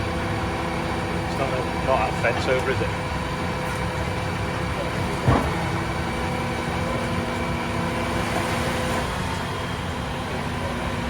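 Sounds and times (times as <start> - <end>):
vehicle engine running under load: 0.0 - 11.0
sharp clunk: 5.1 - 5.8.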